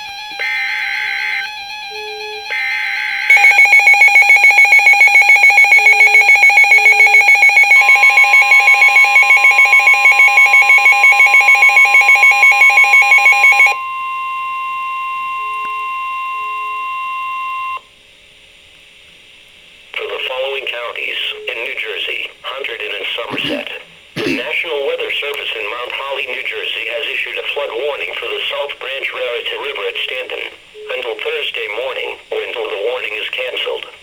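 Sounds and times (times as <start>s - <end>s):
steady warning tone: 0.0s - 17.8s
pulsing electronic alarm beep: 0.1s - 17.8s.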